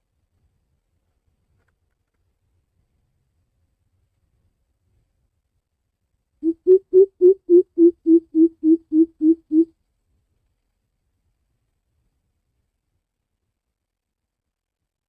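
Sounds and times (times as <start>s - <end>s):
bird deep hooting call: 6.4s - 9.7s.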